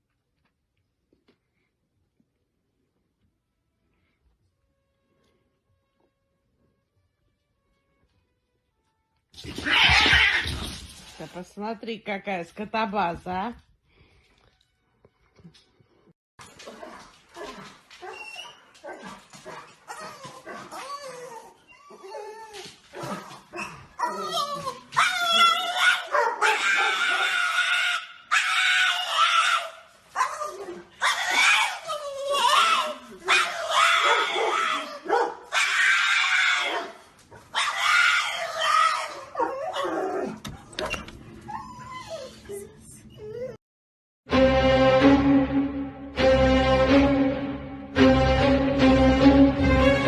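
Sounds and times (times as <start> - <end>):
dog whining and yipping: 18.0 - 22.7, 37.6 - 43.6.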